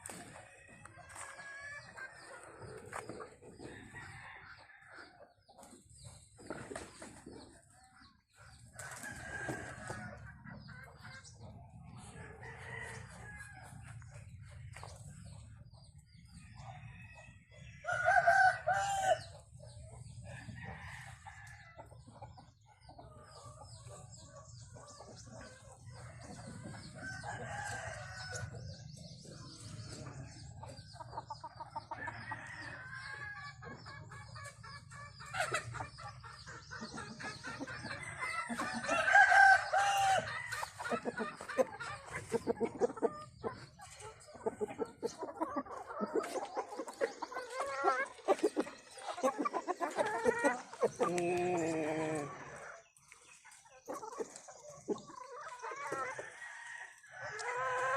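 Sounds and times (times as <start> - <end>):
chickens clucking: 0.0 - 57.9
high peeping of young birds: 0.0 - 57.9
rooster crowing: 38.5 - 40.3.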